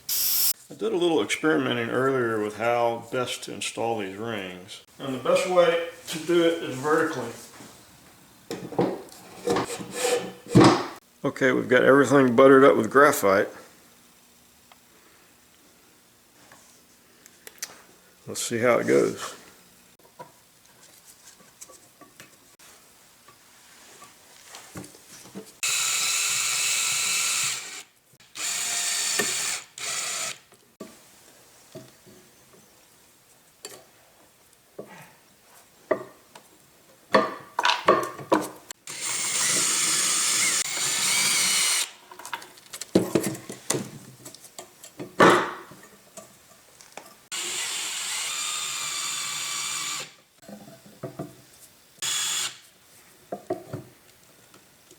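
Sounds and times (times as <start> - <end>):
power tool running: 25.6 - 30.4, 38.8 - 42.0, 47.3 - 50.1, 52.0 - 52.6.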